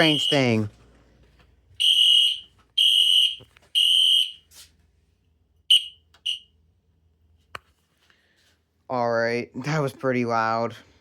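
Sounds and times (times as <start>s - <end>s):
alarm chirps: 0.0s - 0.7s, 1.8s - 4.4s, 5.7s - 6.5s
fire alarm horn blasts: 0.0s - 0.7s, 1.8s - 4.5s, 5.7s - 6.5s.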